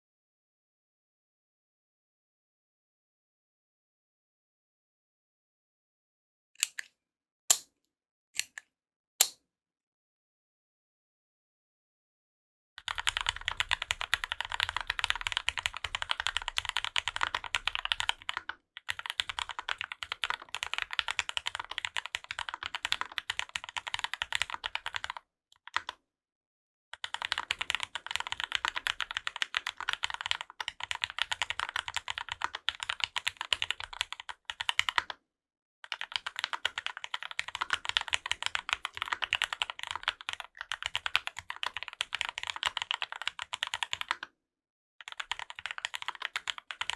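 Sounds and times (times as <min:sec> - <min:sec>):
fast mechanical keyboard typing: 0:12.8 - 0:25.2, 0:27.0 - 0:35.1, 0:35.9 - 0:44.2, 0:45.0 - 0:46.9.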